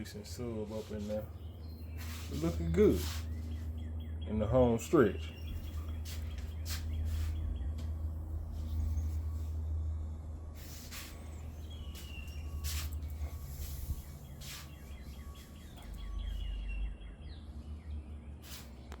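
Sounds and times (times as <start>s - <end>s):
small birds chirping: 0.0s - 9.8s, 10.6s - 19.0s
steady low rumble: 0.0s - 19.0s
brief hissing noises: 10.6s - 11.2s, 18.4s - 18.8s.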